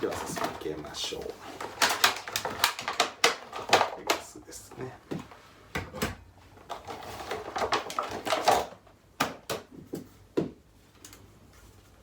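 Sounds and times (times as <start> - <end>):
packaging rustling: 0.0 - 5.4, 6.6 - 8.8
hard items clacking: 0.0 - 8.8.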